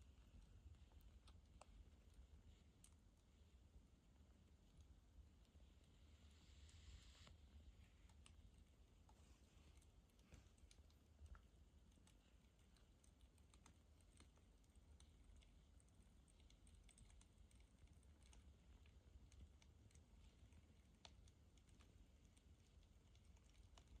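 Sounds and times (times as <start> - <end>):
light clicks and taps: 7.2 - 24.0.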